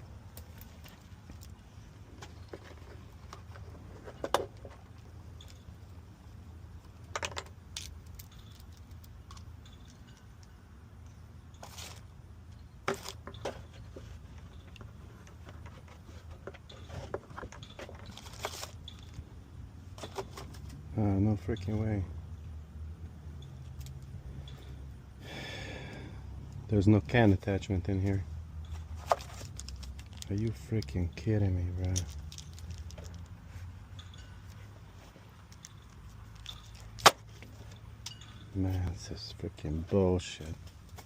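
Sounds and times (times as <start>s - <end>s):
small parts and tools clinking: 0.3s - 6.1s, 6.8s - 22.0s, 28.6s - 39.5s.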